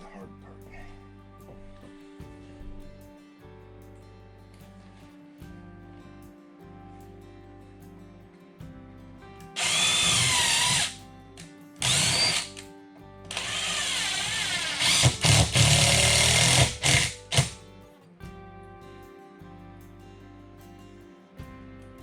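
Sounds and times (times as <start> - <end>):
power drill whining: 9.6 - 11.0, 11.8 - 12.6, 13.3 - 17.6.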